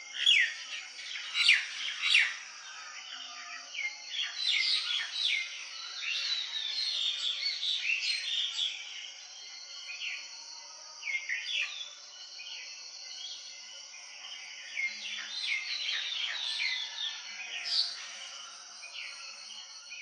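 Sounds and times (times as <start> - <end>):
birds chirping and calling: 0.0 - 2.4, 4.2 - 8.8, 14.8 - 19.6
high insect hiss: 0.1 - 17.1.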